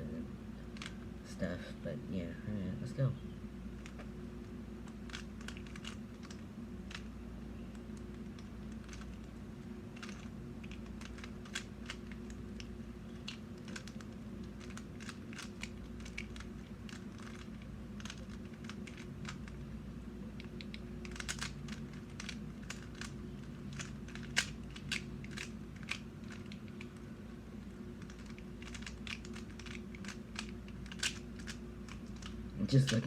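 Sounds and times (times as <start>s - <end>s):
steady low hum: 0.0s - 33.0s
puzzle cube plastic clicks: 4.8s - 7.1s, 7.7s - 9.4s, 10.0s - 19.6s, 20.4s - 27.1s, 28.0s - 33.0s.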